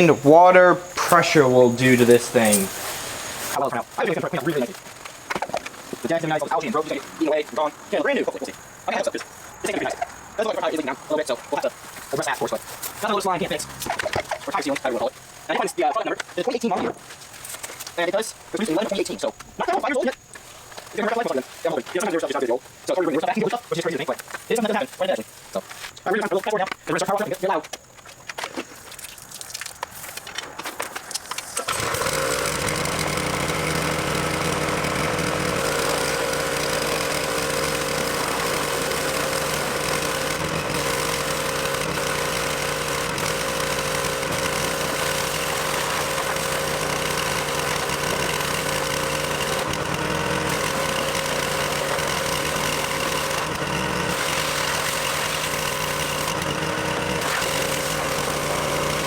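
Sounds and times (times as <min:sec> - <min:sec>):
hissing water spray: 0:00.0 - 0:07.8
pressure washer motor hum: 0:00.0 - 0:08.7, 0:09.7 - 0:15.2, 0:31.3 - 0:59.0.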